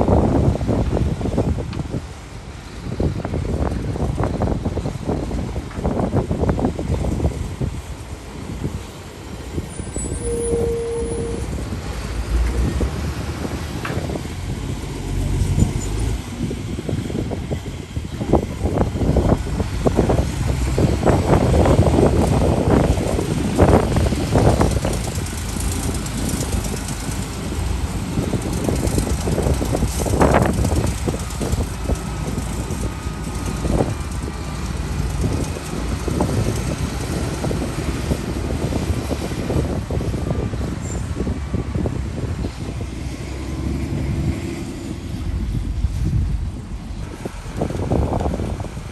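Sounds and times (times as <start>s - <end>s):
diesel machinery rumbling: 0.0s - 48.9s
crackling and clatter: 18.4s - 38.3s.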